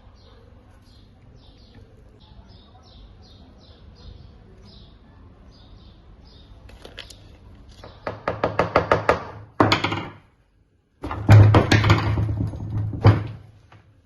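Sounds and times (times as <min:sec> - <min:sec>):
rapid sharp knocks: 0:07.9 - 0:10.2.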